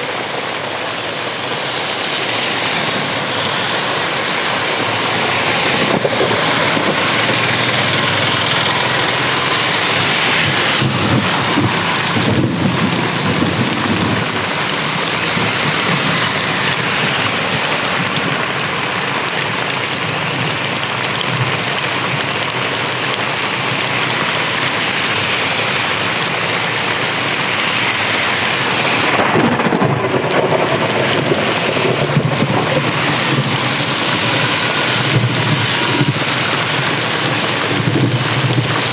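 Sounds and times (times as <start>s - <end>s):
heavy rain pouring: 0.0s - 38.9s
low thunder rumble: 2.9s - 18.8s, 29.0s - 38.9s.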